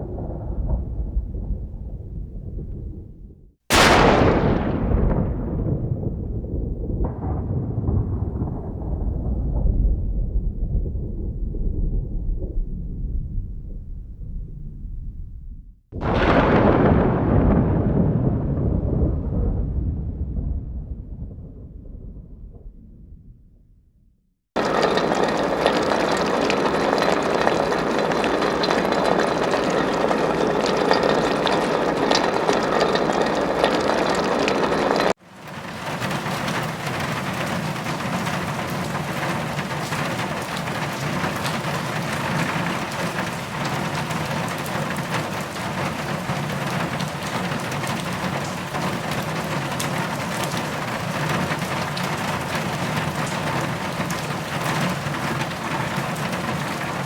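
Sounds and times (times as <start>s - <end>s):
rain falling: 24.6s - 57.0s.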